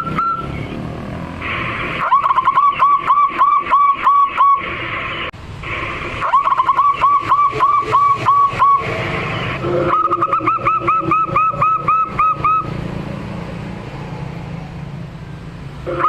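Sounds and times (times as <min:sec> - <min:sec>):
dove cooing: 0:09.7 - 0:12.6.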